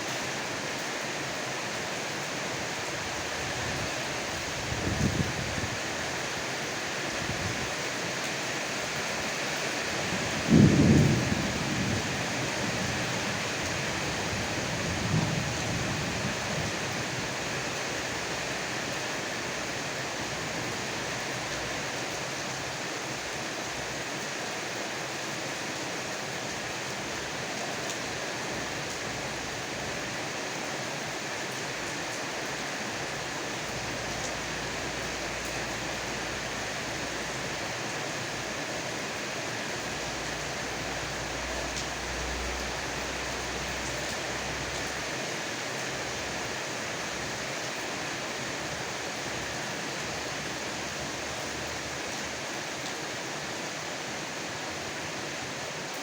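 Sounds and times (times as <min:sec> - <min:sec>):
heavy rain falling: 0:00.0 - 0:56.0
low thunder rumble: 0:10.1 - 0:13.2.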